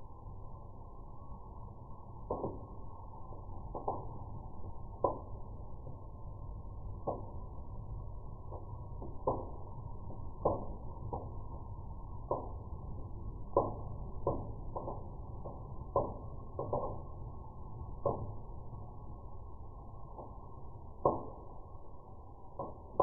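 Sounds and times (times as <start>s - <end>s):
low steady hiss: 0.0s - 23.0s
dull crackling pops: 8.5s - 12.8s, 13.4s - 18.5s.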